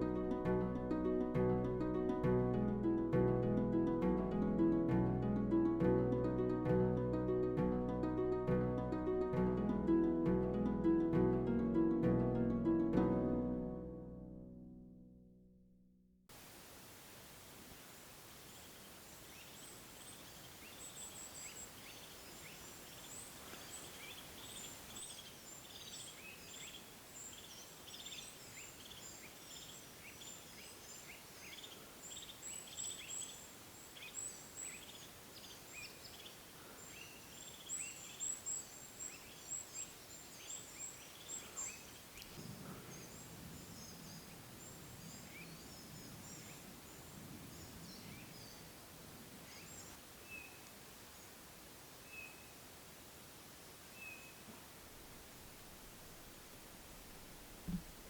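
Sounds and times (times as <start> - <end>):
small birds chirping: 18.2 - 52.6
faint low rustling: 41.8 - 50.0, 54.3 - 58.0.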